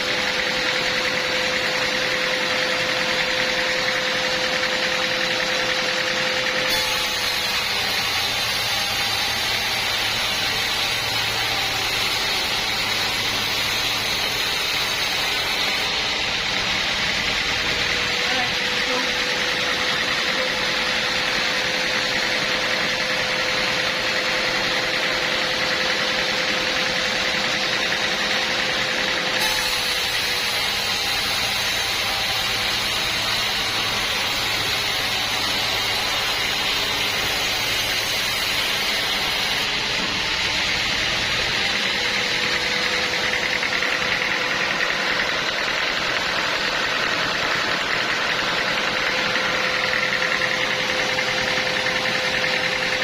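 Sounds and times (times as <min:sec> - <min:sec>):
sawmill engine running: 0:00.0 - 0:53.0
hiss: 0:27.8 - 0:42.5.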